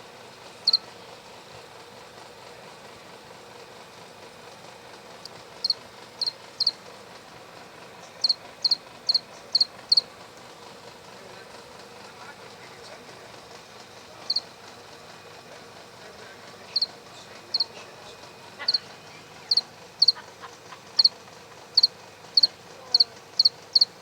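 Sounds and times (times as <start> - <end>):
cricket chirping: 0.6 - 0.8, 5.6 - 6.8, 8.2 - 10.1, 14.3 - 14.5, 16.7 - 17.7, 18.6 - 20.2, 21.8 - 24.0.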